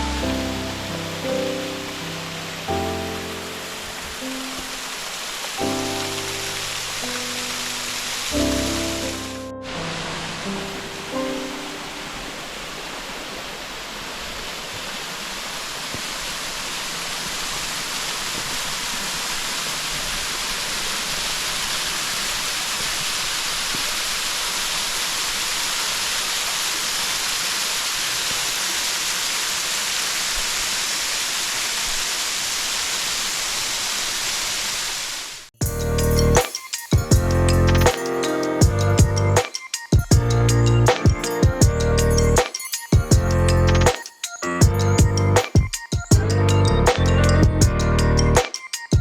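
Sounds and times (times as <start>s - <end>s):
waterfall rushing: 0.0s - 38.6s.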